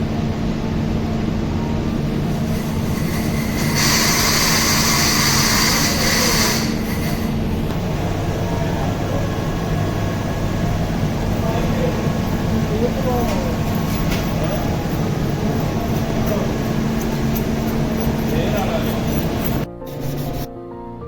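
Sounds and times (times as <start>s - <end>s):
water pump machine hum: 0.0s - 20.5s
hiss: 2.2s - 7.5s.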